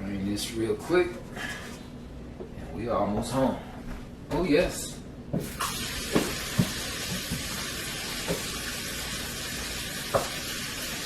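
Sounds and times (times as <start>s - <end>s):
hot water pouring: 5.6s - 11.0s.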